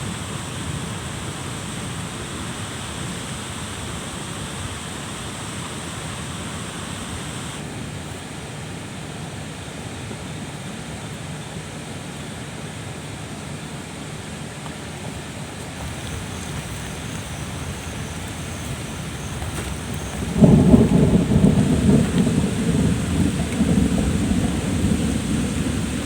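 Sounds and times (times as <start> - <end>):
rushing water: 0.0 - 26.0
wind: 0.0 - 26.0.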